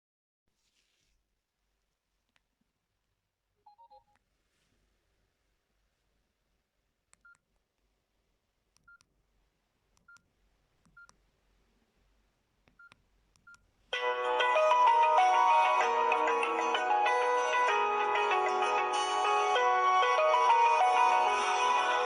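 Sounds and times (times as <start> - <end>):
phone keypad beeps: 3.6 - 4.1
ringtone melody: 14.0 - 22.0.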